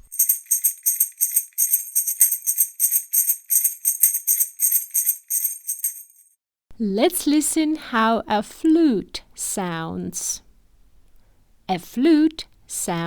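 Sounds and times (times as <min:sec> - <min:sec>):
tambourine jingling: 0:00.0 - 0:06.4.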